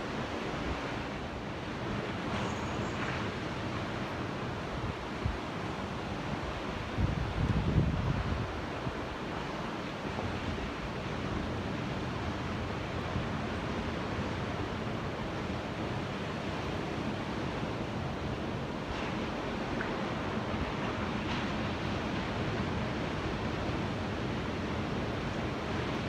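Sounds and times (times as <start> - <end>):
ocean waves and surf: 0.0 - 26.0.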